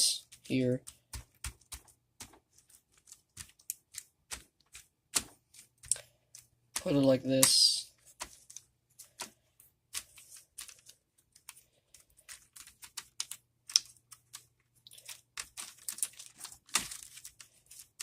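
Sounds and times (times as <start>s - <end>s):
plastic keyboard parts clicking: 8.2s - 18.0s.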